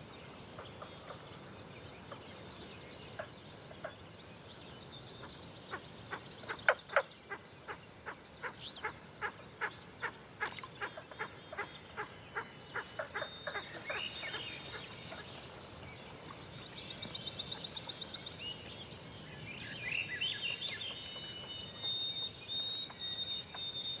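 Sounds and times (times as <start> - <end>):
birds singing trills and whistles: 8.4 - 24.0.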